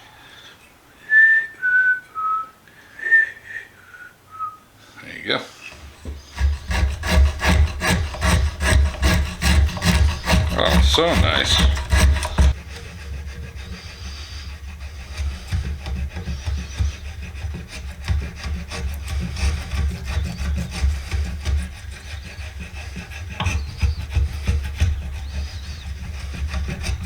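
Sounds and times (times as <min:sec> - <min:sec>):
spokeshave scraping wood: 0:05.5 - 0:27.0.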